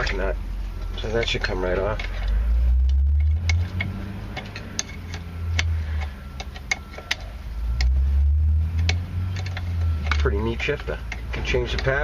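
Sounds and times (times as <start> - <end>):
steady low rumble: 0.0 - 12.0
socket ratchet clicking: 2.2 - 8.0.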